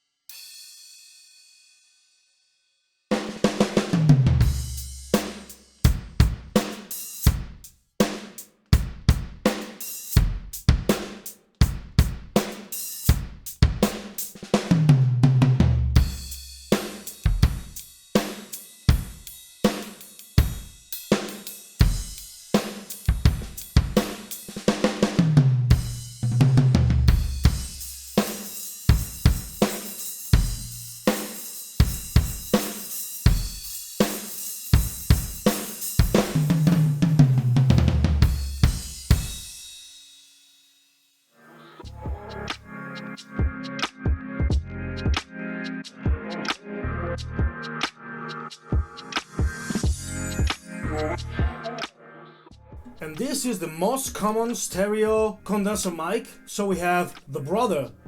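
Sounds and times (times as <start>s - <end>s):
hi-hat and cymbals: 0.2s - 2.3s, 3.1s - 14.8s, 16.0s - 26.4s, 27.1s - 37.3s, 38.2s - 41.0s, 48.4s - 51.4s
electronic drum groove: 3.2s - 39.6s, 43.2s - 46.6s, 47.3s - 51.9s
tom fill: 52.8s - 58.0s.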